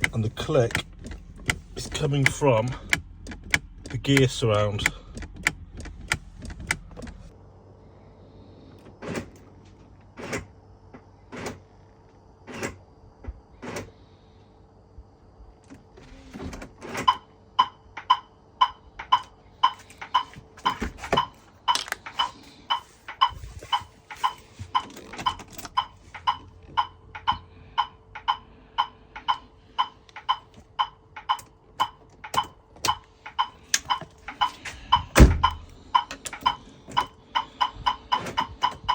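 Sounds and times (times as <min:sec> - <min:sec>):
shift solenoid clicking: 0:00.0 - 0:07.3, 0:17.0 - 0:38.9
faint steady hum: 0:00.0 - 0:08.9.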